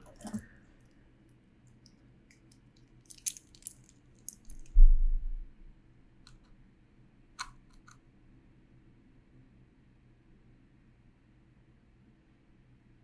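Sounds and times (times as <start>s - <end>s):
dull low thump: 4.7s - 5.6s.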